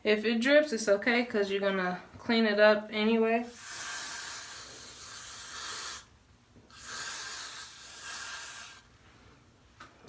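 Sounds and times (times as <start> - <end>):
aerosol spray hissing: 3.5 - 6.1, 6.7 - 8.9.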